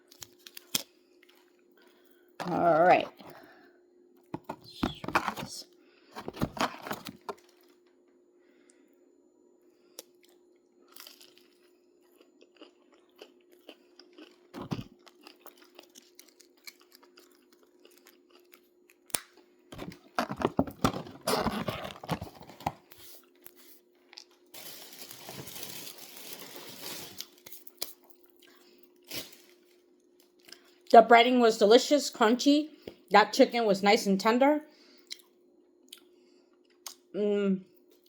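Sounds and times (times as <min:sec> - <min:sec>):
faint steady hum: 0:00.0 - 0:38.0
crunchy chewing of fried chicken: 0:09.8 - 0:30.9.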